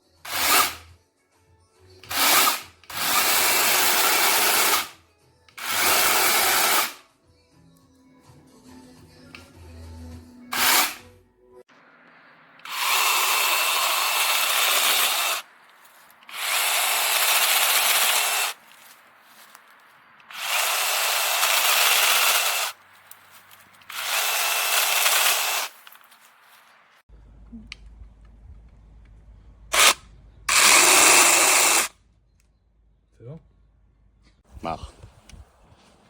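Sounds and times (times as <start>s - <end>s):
battery chainsaw running: 0.3s - 0.8s, 2.1s - 4.9s, 5.6s - 7.0s, 10.5s - 11.0s, 12.6s - 15.4s, 16.3s - 18.6s, 20.3s - 22.8s, 23.9s - 25.7s, 29.8s - 31.9s.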